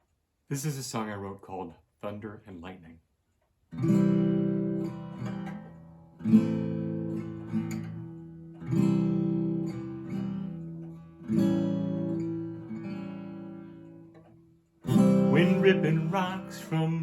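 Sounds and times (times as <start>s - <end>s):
acoustic guitar chords strummed: 3.8s - 17.0s.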